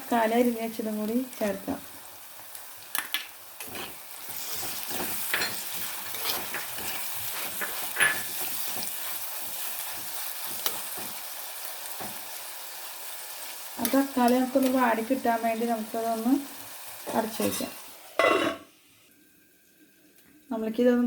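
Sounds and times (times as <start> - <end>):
vegetables sizzling in a pan: 0.0 - 21.0
spoon stirring and scraping: 3.6 - 11.3.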